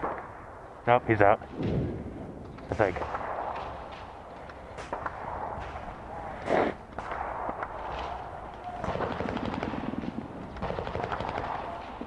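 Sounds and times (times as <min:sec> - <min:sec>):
airsoft automatic fire bursts: 0:08.8 - 0:12.0.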